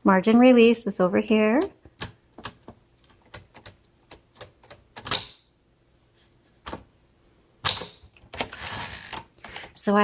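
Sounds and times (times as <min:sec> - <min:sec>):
typewriter clunk: 0:07.6 - 0:09.2.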